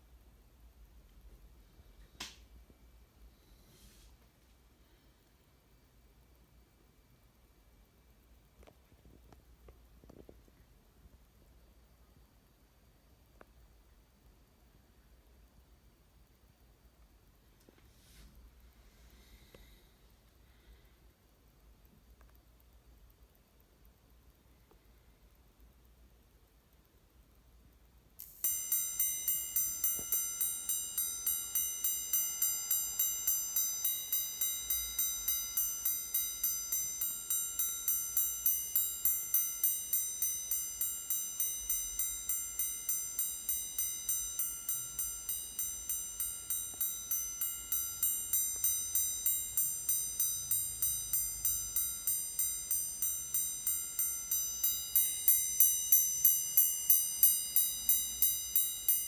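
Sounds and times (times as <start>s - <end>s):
watch alarm gong strikes: 28.4s - 59.0s.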